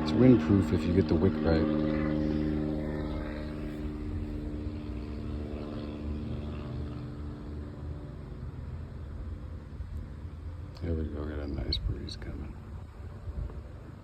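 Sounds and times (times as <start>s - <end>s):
distant engine drone: 0.0s - 14.0s
wind rumbling on microphone: 11.2s - 14.0s.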